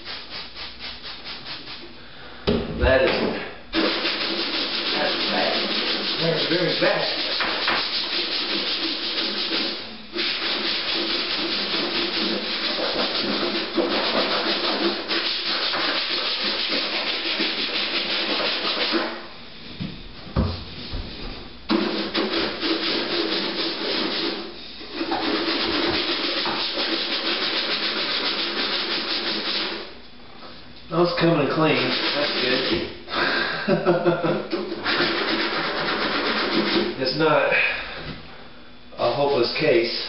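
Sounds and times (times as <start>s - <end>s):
scrubbing a refrigerator surface: 0.0s - 1.9s, 3.8s - 19.3s, 20.5s - 30.0s, 31.0s - 33.0s, 34.0s - 37.2s.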